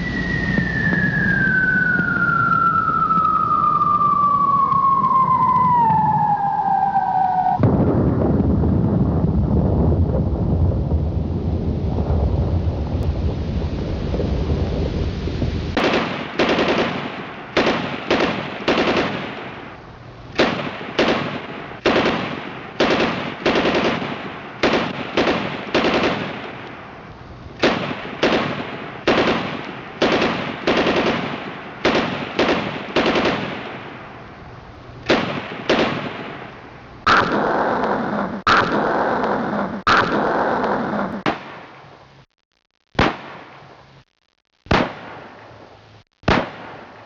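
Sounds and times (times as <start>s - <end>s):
low rumble: 0.0s - 15.8s
loud steady roar: 7.6s - 15.8s
machine gun bursts: 15.8s - 19.4s, 20.4s - 26.5s, 27.6s - 33.6s.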